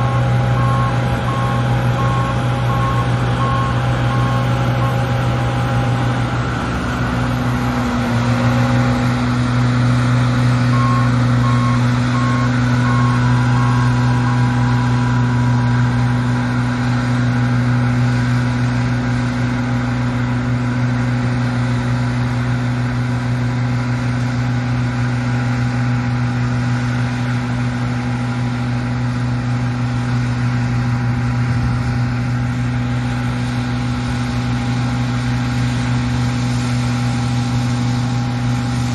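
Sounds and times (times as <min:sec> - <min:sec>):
reversing alarm beeping: 0:00.0 - 0:05.3, 0:10.7 - 0:16.4
diesel engine drone: 0:00.0 - 0:38.9.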